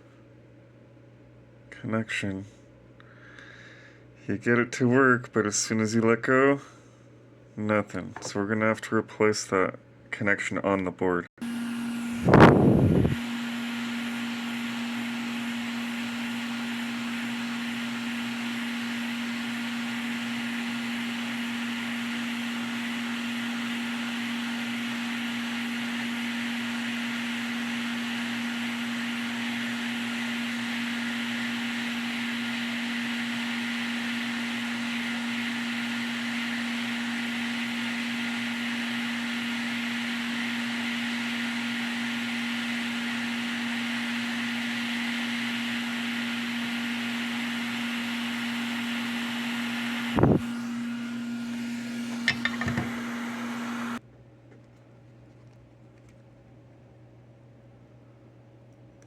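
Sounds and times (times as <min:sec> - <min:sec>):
hot air station hissing: 0:44.8 - 0:54.0.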